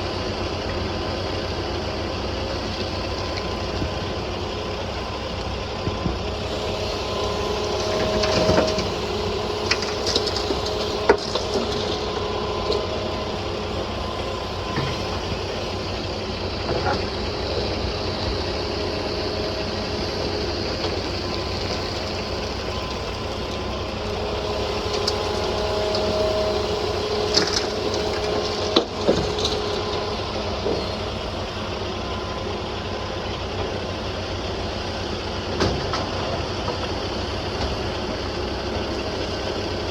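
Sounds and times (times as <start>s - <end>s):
excavator diesel engine whining: 0.0s - 39.9s.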